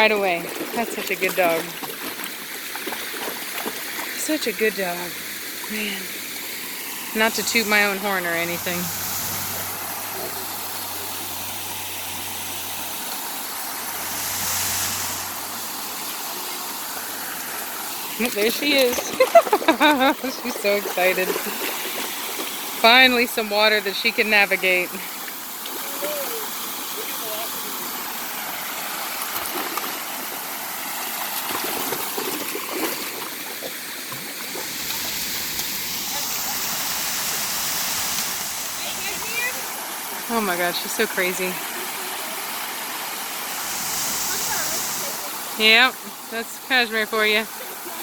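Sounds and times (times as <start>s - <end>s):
waterfall and stream rushing: 1.3s - 24.4s, 33.0s - 48.0s
brief hissing swell: 6.1s - 18.1s, 34.5s - 39.7s, 43.3s - 46.1s.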